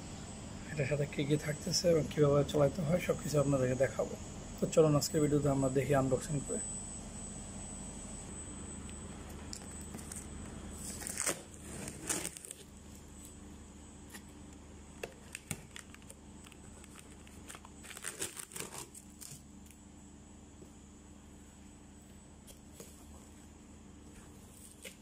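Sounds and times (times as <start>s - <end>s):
packaging tearing and rustling: 10.8s - 12.7s, 15.1s - 19.4s.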